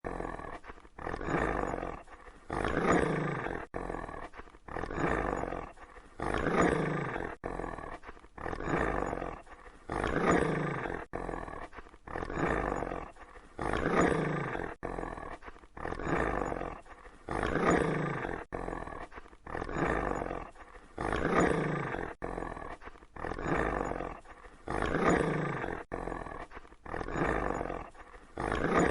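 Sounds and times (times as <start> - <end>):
dog growling deeply: 0.0 - 28.9.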